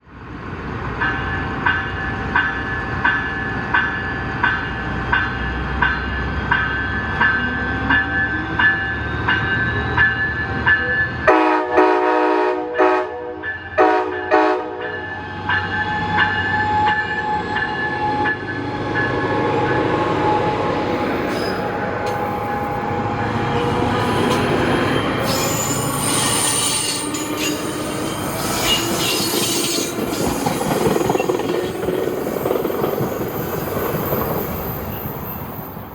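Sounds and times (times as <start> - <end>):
multi-tone train horn blasts: 11.2 - 15.3
locomotive bell ringing: 13.4 - 34.0
train wheels on rails: 13.5 - 35.9
high wheel squeal: 15.7 - 22.6, 23.2 - 35.9.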